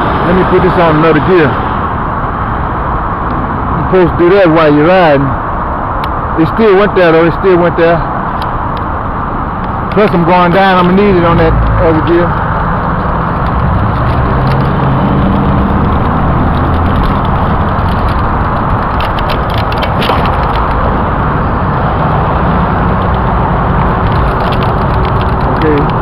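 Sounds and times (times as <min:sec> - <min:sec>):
road traffic: 0:00.0 - 0:26.0
wind on microphone: 0:08.1 - 0:26.0.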